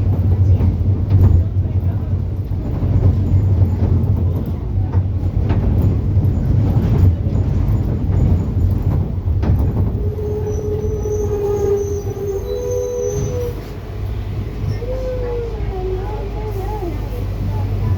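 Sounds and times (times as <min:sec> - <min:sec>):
rattles and knocks: 0:00.0 - 0:11.0
bus engine and road rumble: 0:00.0 - 0:17.9
high squeal: 0:10.0 - 0:13.8.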